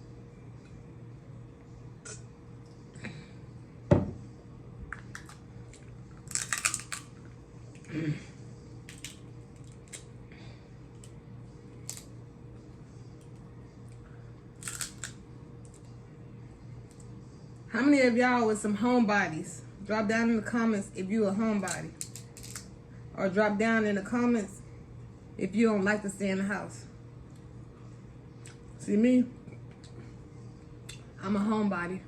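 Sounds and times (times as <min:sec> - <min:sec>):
crab shells snapping: 0:05.0 - 0:07.2, 0:08.9 - 0:10.1, 0:11.8 - 0:12.1, 0:14.6 - 0:15.2, 0:21.7 - 0:22.7.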